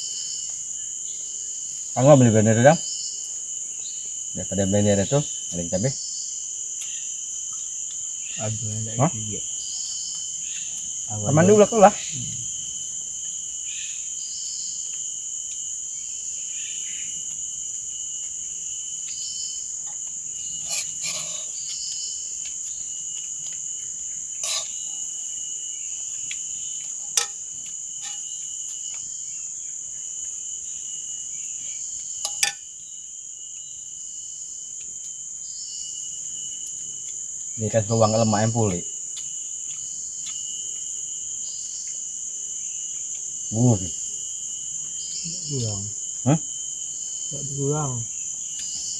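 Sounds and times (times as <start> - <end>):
forest insects chorus: 0.0 - 48.9.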